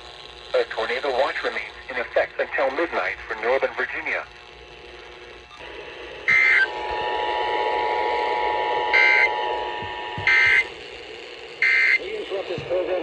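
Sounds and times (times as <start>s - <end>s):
shrill digital data tones: 5.5s - 10.9s, 11.5s - 12.9s.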